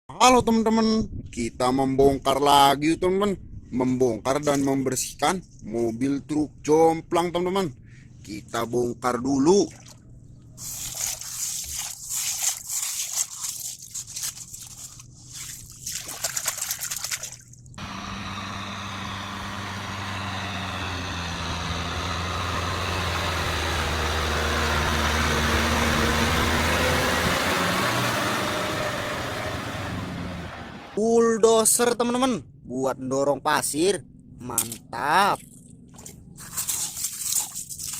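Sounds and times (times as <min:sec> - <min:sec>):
water trickling and splashing: 0:09.6 - 0:17.8, 0:35.3 - 0:37.9.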